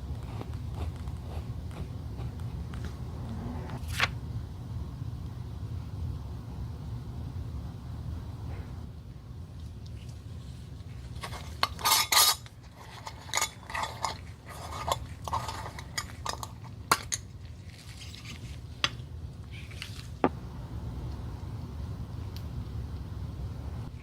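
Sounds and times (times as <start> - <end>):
steady low hum: 0.0 - 24.0
tools clinking and scraping: 11.2 - 18.4.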